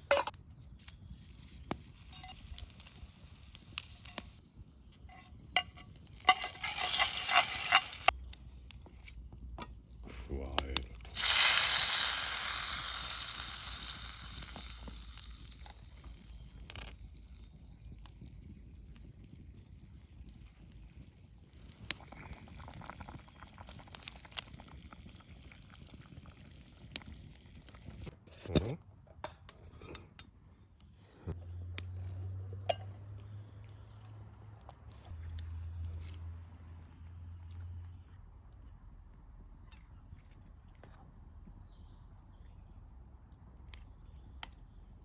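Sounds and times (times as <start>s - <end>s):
hot pan sizzling: 2.0s - 4.4s, 5.1s - 8.8s, 10.7s - 18.6s.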